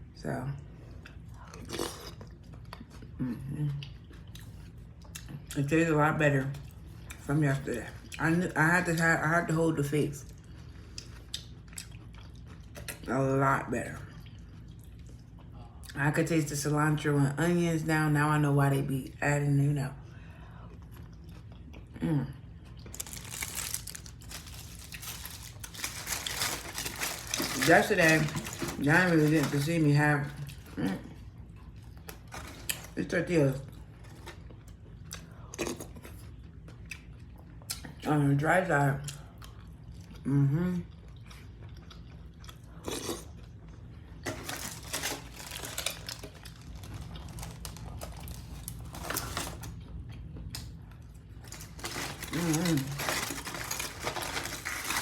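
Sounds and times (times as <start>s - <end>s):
close-miked chewing: 0.9s - 5.6s, 10.2s - 13.1s, 20.6s - 29.5s, 40.8s - 55.0s
food wrapper crinkling: 22.8s - 30.8s, 32.0s - 34.7s, 44.2s - 49.9s, 51.3s - 55.0s.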